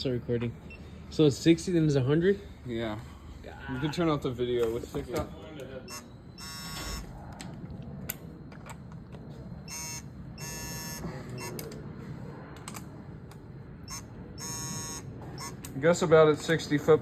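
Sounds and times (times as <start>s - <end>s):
torque wrench electronic beeps: 5.8s - 7.1s, 9.6s - 11.6s, 13.8s - 15.6s.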